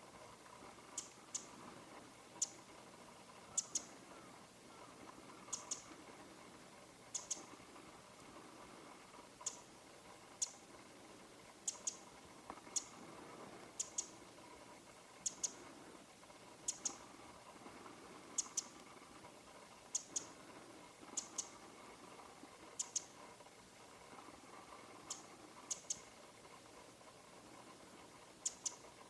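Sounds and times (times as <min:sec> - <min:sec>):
wren calling: 0:00.9 - 0:01.6, 0:02.4 - 0:02.7, 0:03.4 - 0:06.0, 0:07.1 - 0:07.6, 0:09.4 - 0:09.7, 0:10.4 - 0:10.7, 0:11.6 - 0:12.1, 0:12.7 - 0:13.0, 0:13.7 - 0:14.2, 0:15.2 - 0:15.7, 0:16.6 - 0:17.1, 0:18.3 - 0:18.8, 0:19.9 - 0:20.4, 0:21.1 - 0:21.6, 0:22.8 - 0:23.2, 0:25.0 - 0:26.1, 0:28.4 - 0:28.8.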